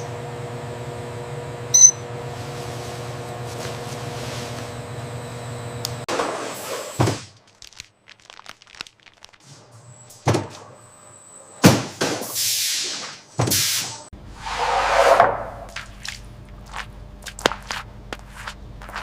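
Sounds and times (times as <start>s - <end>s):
rushing noise: 14.3s - 15.8s.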